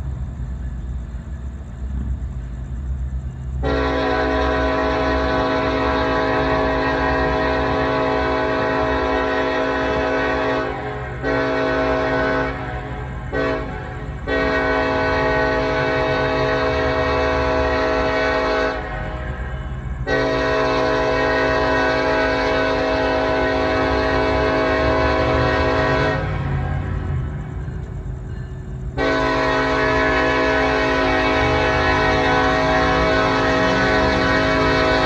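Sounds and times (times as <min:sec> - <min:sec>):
low train rumble: 0:00.0 - 0:35.0
locomotive air horn blasts: 0:03.6 - 0:26.9, 0:28.9 - 0:35.0.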